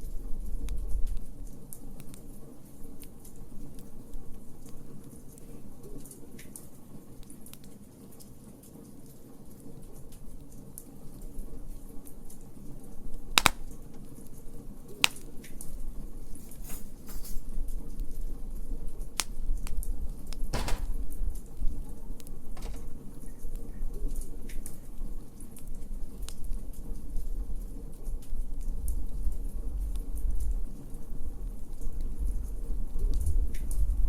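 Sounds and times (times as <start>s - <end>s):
wood fire crackling: 9.9s - 23.6s
sharp pops of fire: 13.3s - 14.2s, 14.9s - 15.6s, 19.1s - 21.4s.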